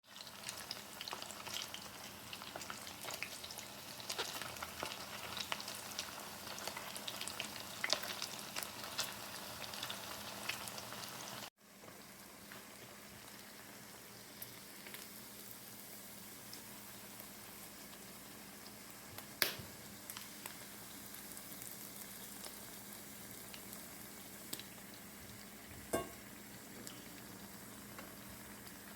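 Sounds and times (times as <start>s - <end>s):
food sizzling in a pan: 0.0s - 28.9s
crackling pops: 19.2s - 20.6s.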